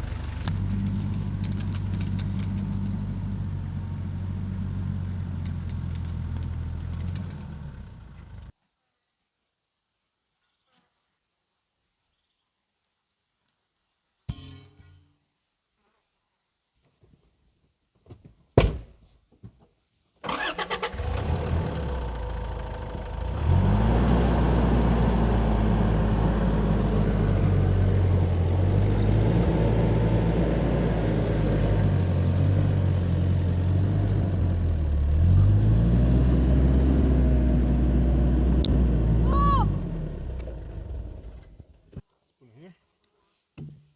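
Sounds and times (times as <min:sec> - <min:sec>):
engine cranking and starting: 0:00.0 - 0:03.7, 0:04.9 - 0:08.5, 0:20.2 - 0:41.9
engine revving: 0:00.0 - 0:08.5, 0:20.3 - 0:41.8.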